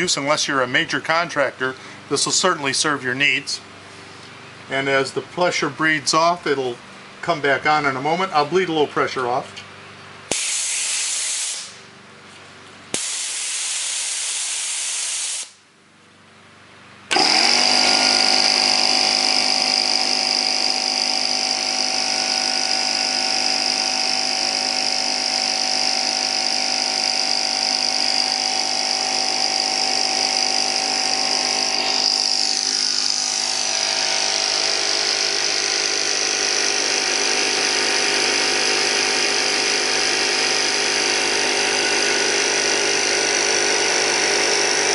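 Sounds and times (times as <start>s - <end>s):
air compressor motor running: 0.0s - 9.6s, 10.2s - 15.7s, 16.8s - 44.9s
compressed air hissing: 10.3s - 11.9s, 12.9s - 15.6s.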